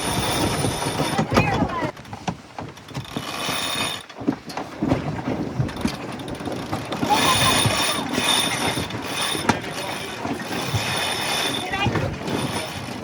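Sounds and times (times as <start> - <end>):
winch ratchet clicking: 0.0 - 1.3, 2.8 - 4.2, 5.8 - 13.0.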